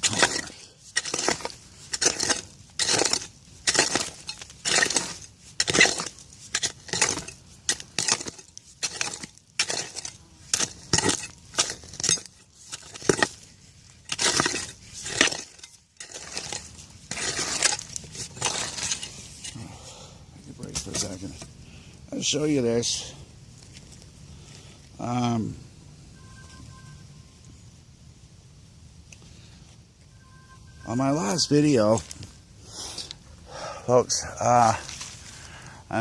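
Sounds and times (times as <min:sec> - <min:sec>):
digging tool scraping soil: 0:00.0 - 0:19.6, 0:20.6 - 0:21.5.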